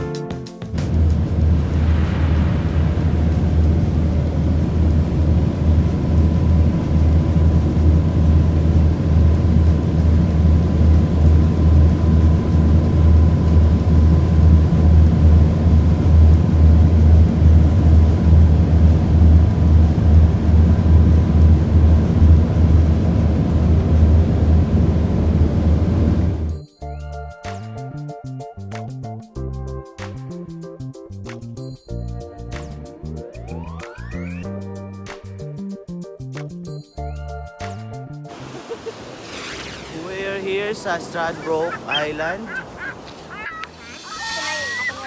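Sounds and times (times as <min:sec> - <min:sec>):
low engine drone: 0:00.8 - 0:26.6.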